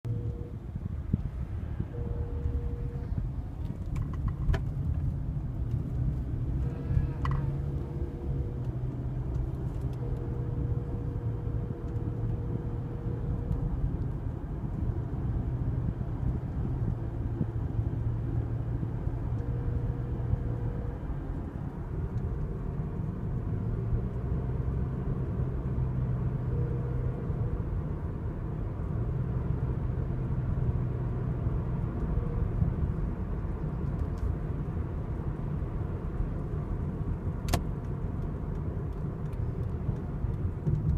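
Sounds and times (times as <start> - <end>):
car engine and road rumble: 0.0 - 40.9.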